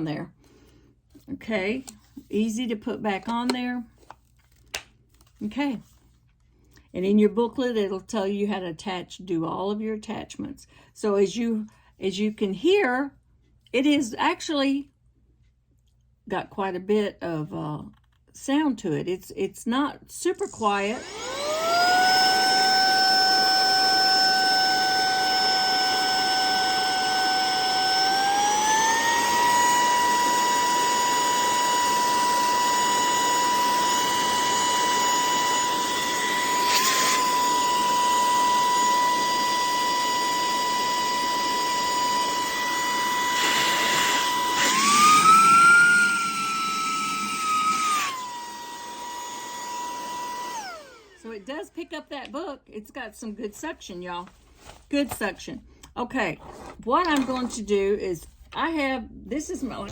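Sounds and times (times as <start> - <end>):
handheld vacuum motor whine: 20.4 - 51.4.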